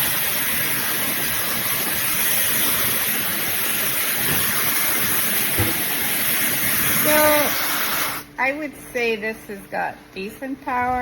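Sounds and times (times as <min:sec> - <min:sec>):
blow dryer running: 0:00.0 - 0:09.7.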